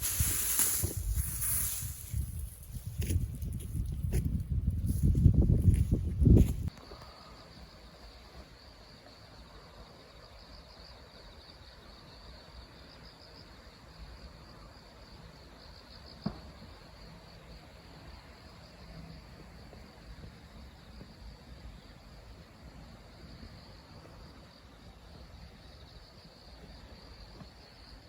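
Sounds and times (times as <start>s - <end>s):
insects trilling: 0.0s - 28.0s.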